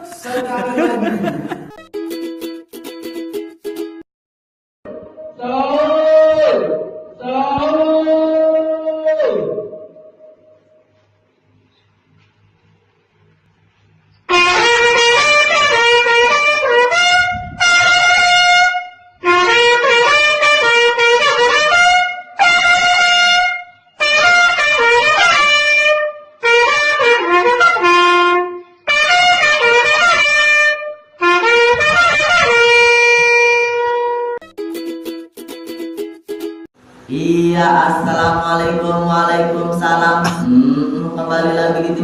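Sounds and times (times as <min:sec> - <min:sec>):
wind instrument melody: 0:14.3 - 0:35.4.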